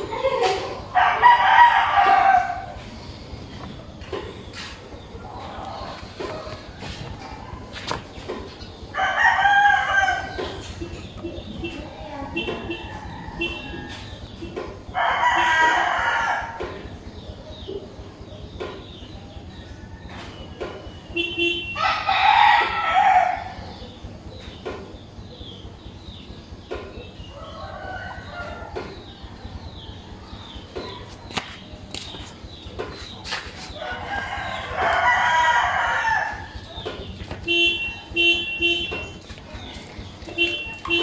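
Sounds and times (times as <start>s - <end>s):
steady low hum: 0.0s - 41.0s
rooster crowing: 0.9s - 2.8s, 8.9s - 10.4s, 15.0s - 16.6s, 21.8s - 23.6s, 33.8s - 36.6s.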